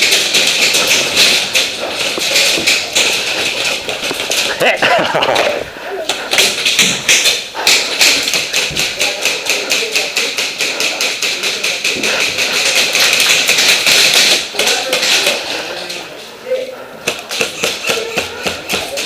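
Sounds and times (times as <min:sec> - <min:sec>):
airsoft guns firing: 0:06.3 - 0:15.4.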